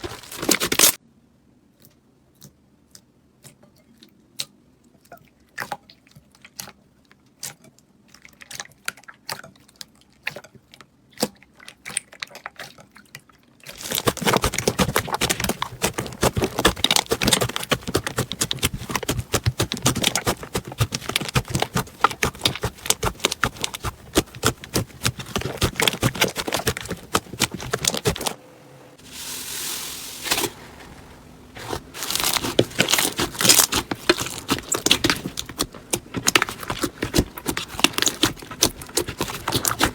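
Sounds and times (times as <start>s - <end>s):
crunchy slime crackling: 13.7s - 28.4s, 29.1s - 39.9s
soft hiss: 28.4s - 32.0s.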